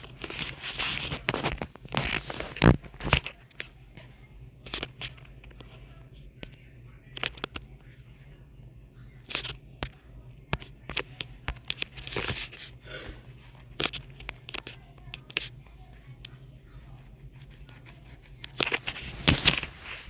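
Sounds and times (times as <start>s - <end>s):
rustling: 18.5s - 20.0s.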